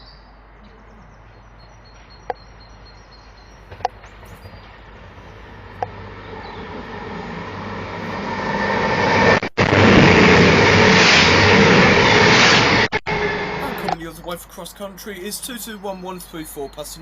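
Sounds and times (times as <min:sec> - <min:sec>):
diesel train passing at speed: 0:01.2 - 0:14.6.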